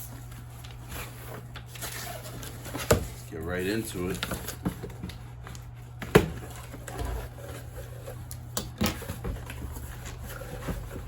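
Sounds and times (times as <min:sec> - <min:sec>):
cardboard rustling: 0:09.0 - 0:11.0.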